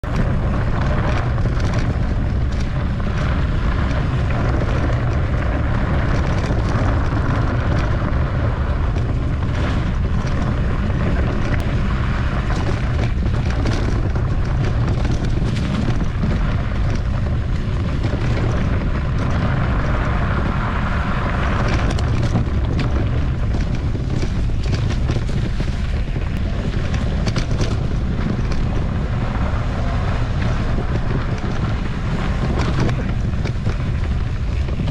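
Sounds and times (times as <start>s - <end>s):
bike knocking and rattling: 0.0s - 34.9s
steady low rumble: 0.0s - 34.9s
wind buffeting microphone: 0.0s - 34.9s.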